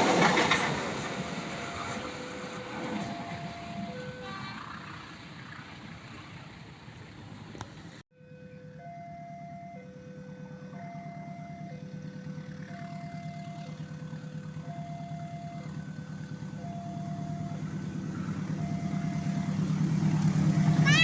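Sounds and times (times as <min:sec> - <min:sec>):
diesel locomotive engine drone: 0:00.0 - 0:21.0
level crossing alarm two tones: 0:01.2 - 0:04.4, 0:08.2 - 0:11.9, 0:14.6 - 0:15.8, 0:16.6 - 0:17.6, 0:18.6 - 0:19.6.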